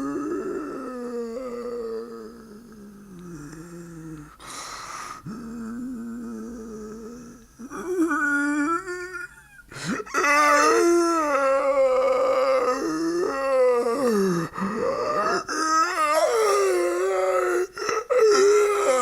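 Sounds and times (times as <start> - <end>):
man groaning like a zombie: 5.3 - 19.0.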